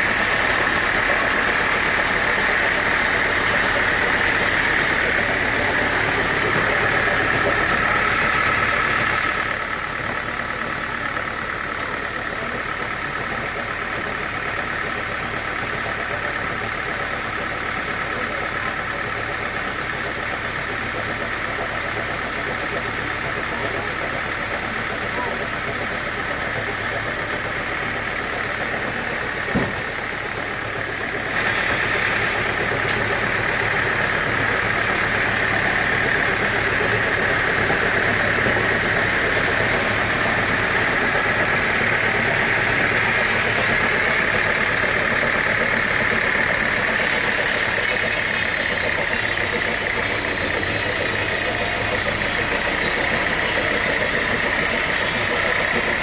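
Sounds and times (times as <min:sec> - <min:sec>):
sawmill machinery running: 0:00.0 - 0:56.0.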